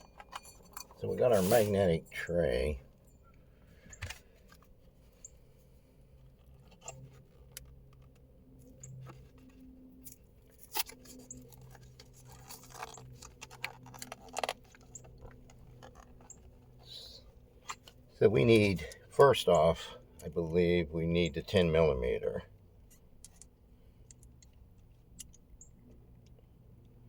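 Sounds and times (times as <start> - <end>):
clicks of metal parts and tools: 0.0 - 1.5.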